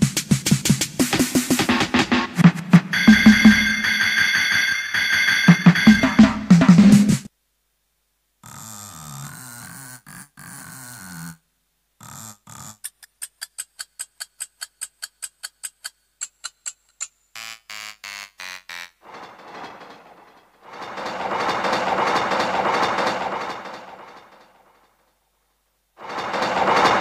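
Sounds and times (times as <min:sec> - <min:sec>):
ringing alarm-like beeps: 0:02.9 - 0:06.5
short pitched keyboard tone: 0:02.9 - 0:06.5
fast run of clicks: 0:13.2 - 0:18.9.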